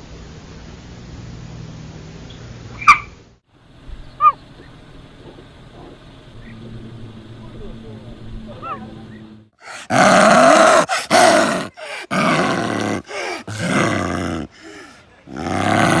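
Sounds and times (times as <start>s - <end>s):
tiger growling and roaring: 5.2s - 16.0s.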